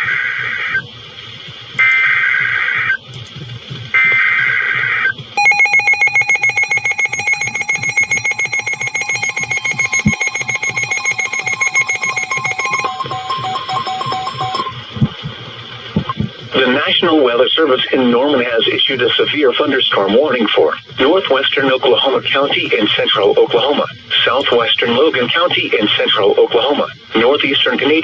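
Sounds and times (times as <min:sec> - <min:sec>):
buzzing digital alert bursts: 0:05.4 - 0:14.9
rapidly pulsing alert tone: 0:05.4 - 0:15.0.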